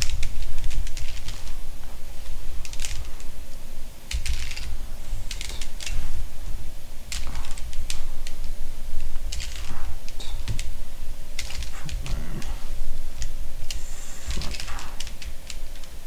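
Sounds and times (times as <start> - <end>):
puzzle cube plastic clicks: 0.0 - 1.5, 4.1 - 4.7, 7.1 - 8.5, 9.3 - 10.7, 11.4 - 12.6, 13.2 - 15.9.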